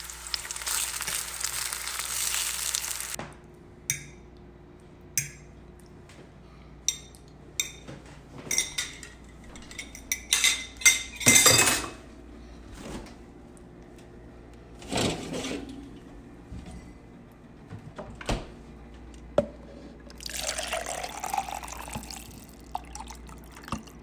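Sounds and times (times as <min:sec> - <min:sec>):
dishes and cutlery clattering: 0:06.9 - 0:12.0.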